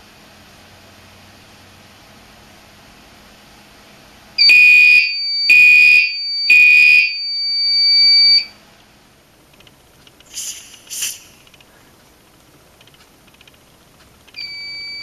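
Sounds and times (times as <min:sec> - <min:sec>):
fire alarm horn blasts: 0:04.4 - 0:08.5
steady high alarm tone: 0:04.4 - 0:08.5, 0:14.4 - 0:15.0
sharp high-pitched sounds: 0:10.3 - 0:11.5.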